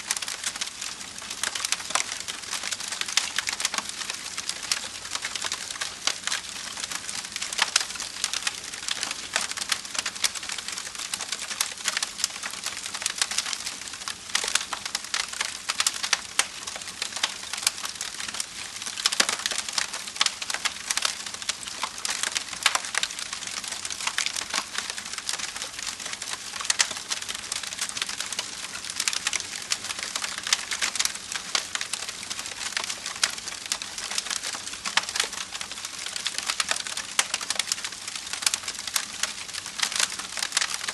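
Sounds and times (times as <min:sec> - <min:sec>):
wood fire crackling: 0:00.0 - 0:40.9.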